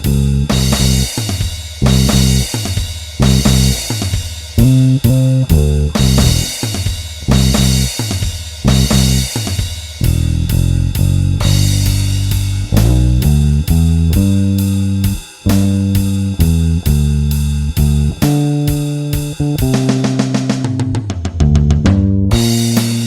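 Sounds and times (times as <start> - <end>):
electric bass playing blues line: 0.0 - 1.1, 1.8 - 2.5, 3.2 - 3.9, 4.6 - 6.6, 7.2 - 7.9, 8.6 - 9.3, 10.0 - 23.0
drums with steady cymbal beat: 0.0 - 23.0.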